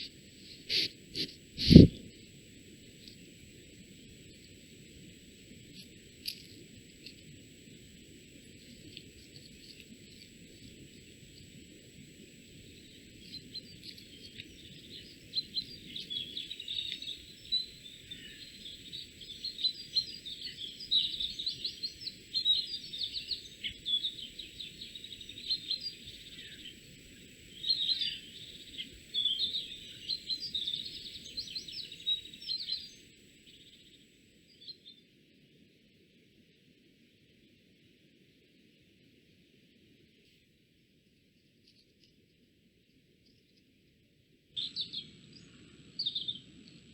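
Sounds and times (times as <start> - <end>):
faint high-pitched tone: 0.0 - 34.7
small songbirds chirping: 12.4 - 35.0.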